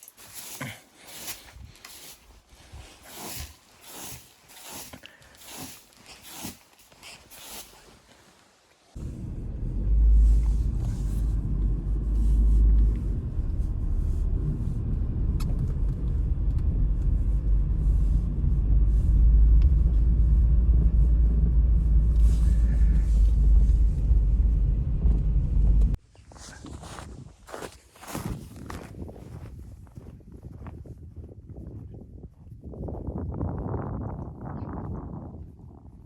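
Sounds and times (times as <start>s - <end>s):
wind buffeting microphone: 26.8s - 36.0s.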